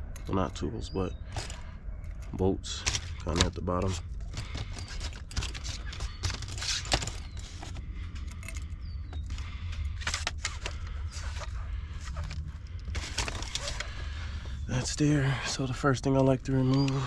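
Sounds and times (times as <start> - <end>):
steady low hum: 0.0 - 17.0
hands handling loose bolts: 1.2 - 14.0.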